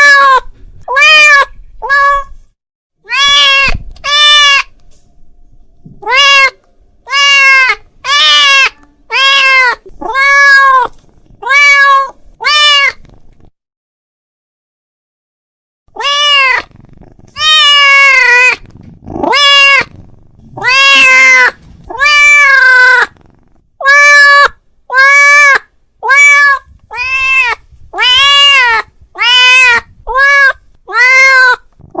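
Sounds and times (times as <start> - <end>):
cat meowing loudly: 0.0 - 2.4, 3.0 - 4.8, 6.0 - 13.0, 15.9 - 16.7, 17.4 - 19.9, 20.6 - 23.2, 23.8 - 31.8.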